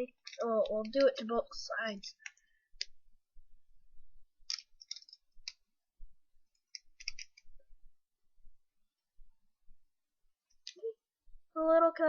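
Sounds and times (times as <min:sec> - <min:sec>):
plastic bricks clicking together: 0:00.1 - 0:01.2, 0:04.4 - 0:05.6, 0:06.5 - 0:07.5.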